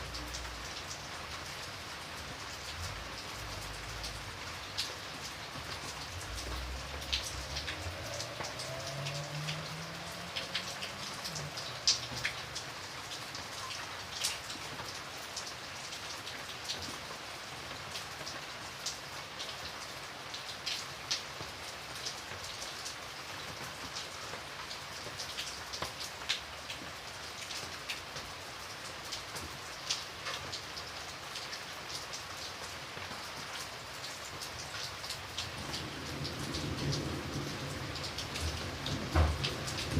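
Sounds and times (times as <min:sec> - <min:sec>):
raindrops ticking close by: 0:00.0 - 0:39.9
steady rain hiss: 0:00.0 - 0:39.9.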